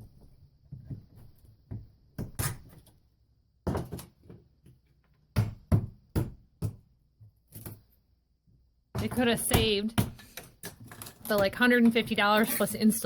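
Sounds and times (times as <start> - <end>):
wood knocks and thumps: 3.6 - 4.8.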